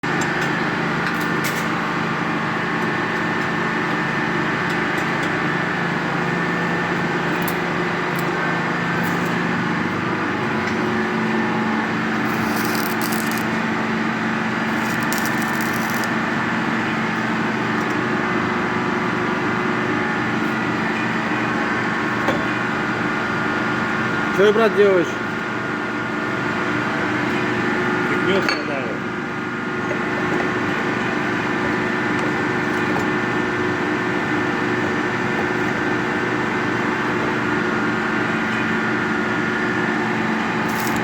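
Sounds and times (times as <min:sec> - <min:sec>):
motor humming: 0:05.7 - 0:16.3.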